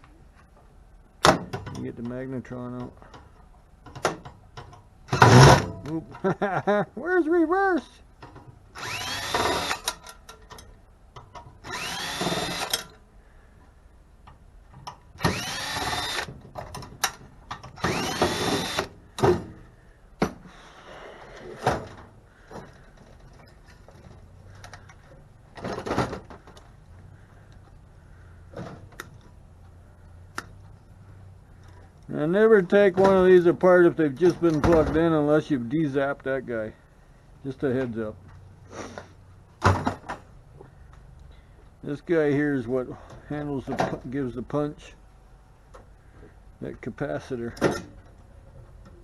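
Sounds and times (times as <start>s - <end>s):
power drill whining: 8.8s - 10.0s, 11.6s - 12.9s, 15.2s - 16.3s, 17.8s - 19.0s.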